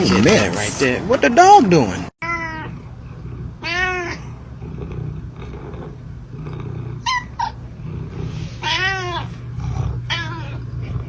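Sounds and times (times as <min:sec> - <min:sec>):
pet calling: 0:02.2 - 0:11.0
low growling rumble: 0:02.4 - 0:11.0.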